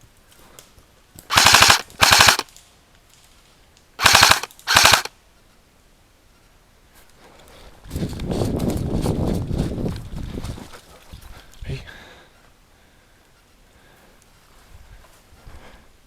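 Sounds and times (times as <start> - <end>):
airsoft rifle bursts: 1.3 - 2.5, 4.0 - 5.1.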